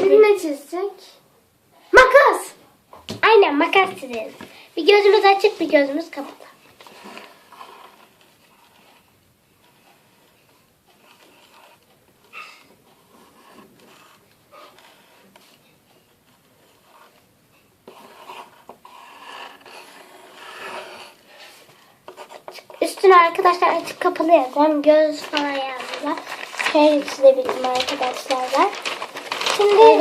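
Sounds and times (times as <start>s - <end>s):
pencil scratching on paper: 6.8s - 28.5s.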